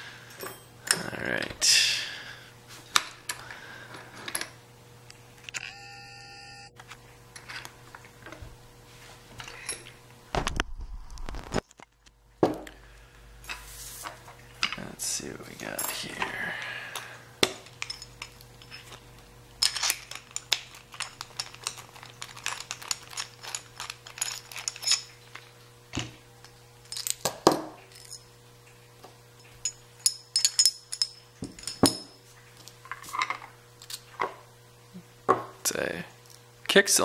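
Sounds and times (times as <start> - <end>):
low hum: 0.0 - 13.7.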